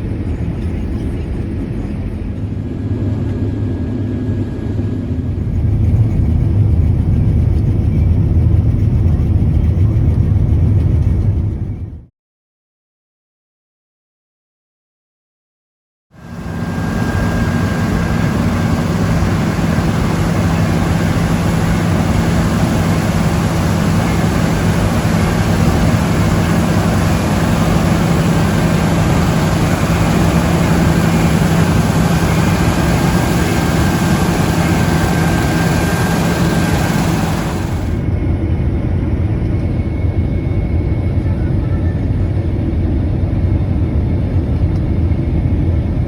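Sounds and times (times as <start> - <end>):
heavy farm machinery running: 16.2 - 38.0.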